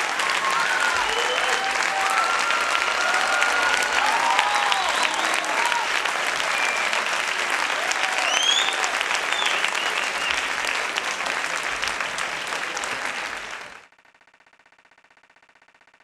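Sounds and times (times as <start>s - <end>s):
people shouting: 0.0s - 6.0s
rising whistle: 0.0s - 7.1s, 8.0s - 10.5s
audience applauding: 0.0s - 13.9s.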